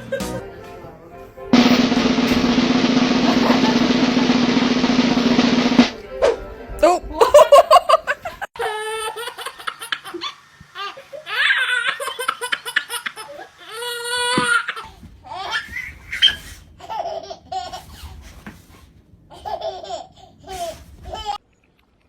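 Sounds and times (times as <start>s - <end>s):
laughter: 0.0s - 0.5s, 3.3s - 4.2s, 7.2s - 8.5s, 9.1s - 10.4s.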